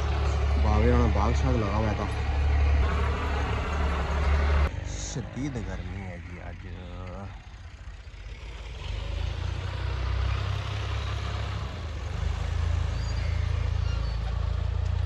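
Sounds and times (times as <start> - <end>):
vehicle engine rumbling: 0.0 - 15.0.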